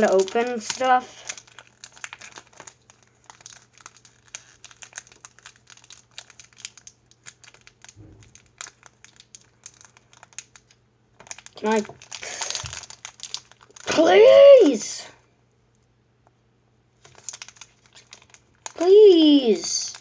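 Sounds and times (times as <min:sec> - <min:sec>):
foil wrapper crinkling: 0:00.0 - 0:14.7, 0:17.0 - 0:20.0.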